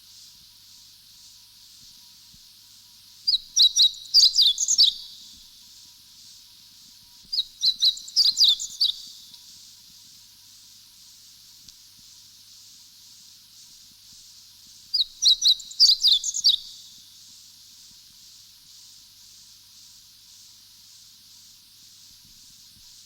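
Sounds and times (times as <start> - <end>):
steady high background hiss: 0.0 - 23.0
songbird chirping: 3.3 - 5.4, 7.3 - 9.3, 14.9 - 17.0.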